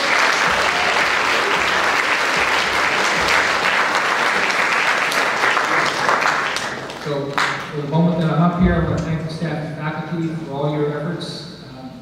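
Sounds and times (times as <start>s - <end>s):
audience applauding: 0.0s - 7.7s.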